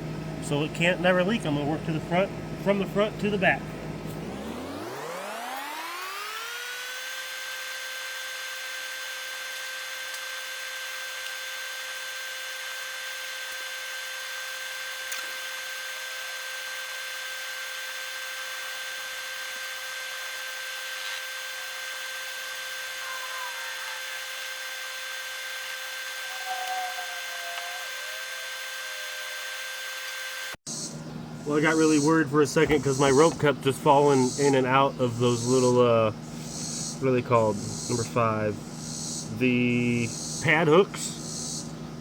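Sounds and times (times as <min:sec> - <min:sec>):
power tool motor whining: 0:04.2 - 0:30.6.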